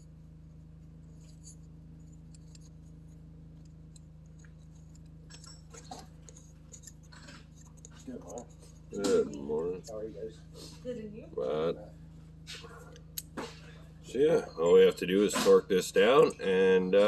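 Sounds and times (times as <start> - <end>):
low hum: 0.0 - 17.0
metal parts clicking: 3.6 - 9.1.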